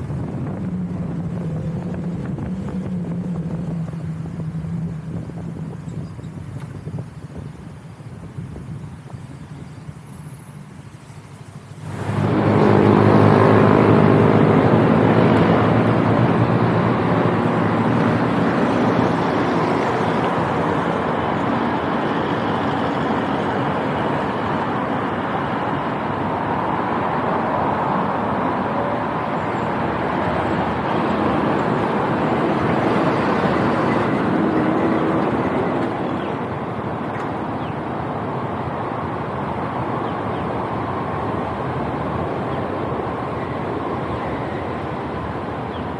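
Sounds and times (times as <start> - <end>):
motorcycle engine accelerating: 0.0 - 6.6, 11.8 - 26.1
wind noise: 0.0 - 45.9.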